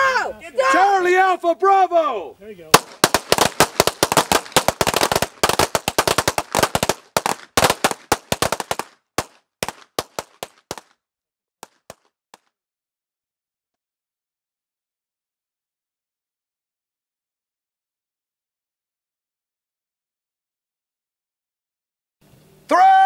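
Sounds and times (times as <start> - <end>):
pistol shots: 2.8 - 10.8.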